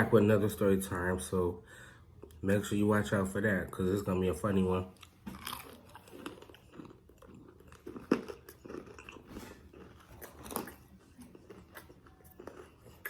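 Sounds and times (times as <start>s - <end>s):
person chewing crunchy food: 4.9s - 13.0s.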